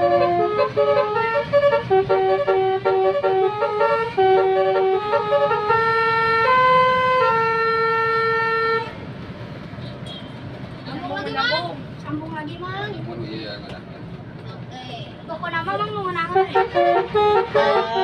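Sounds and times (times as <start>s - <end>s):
multi-tone bus horn tune: 0.0s - 9.1s, 15.8s - 18.0s.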